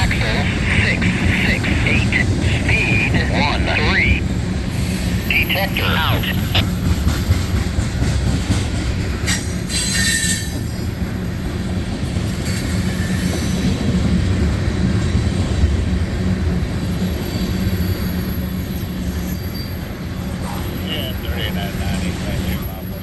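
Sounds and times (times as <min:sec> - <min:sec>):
freight train rumbling past: 0:00.0 - 0:23.0
wheel squeal: 0:09.1 - 0:10.7.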